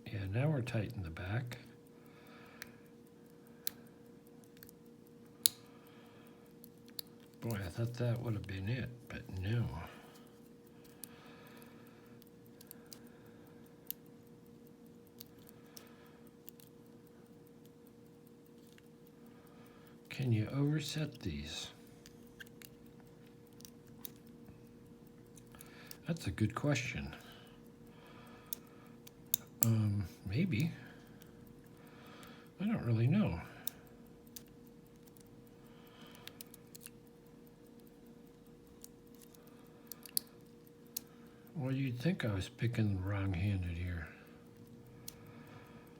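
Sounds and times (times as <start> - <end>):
faint steady hum: 0.0 - 45.9.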